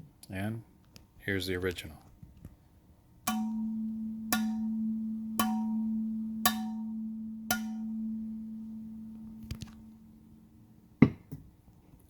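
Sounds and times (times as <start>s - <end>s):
metal bottle tapped ringing: 3.3s - 11.2s.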